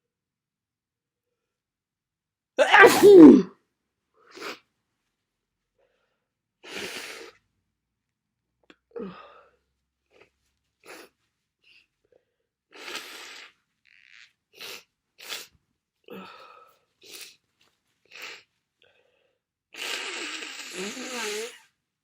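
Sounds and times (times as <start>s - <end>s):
person sniffling: 2.6s - 3.5s.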